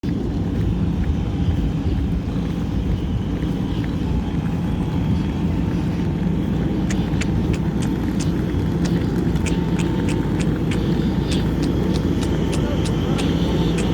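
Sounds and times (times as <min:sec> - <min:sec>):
vehicle low rumble: 0:00.0 - 0:13.9
sharp regular clicks: 0:06.8 - 0:13.9.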